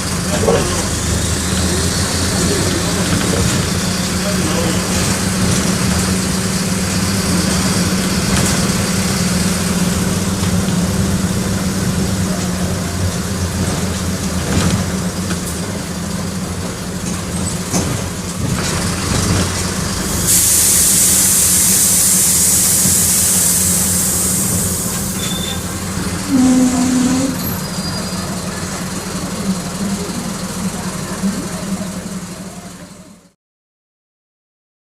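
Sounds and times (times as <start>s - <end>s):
bus diesel engine running: 0.0s - 33.4s
pneumatic air hiss: 20.1s - 25.7s.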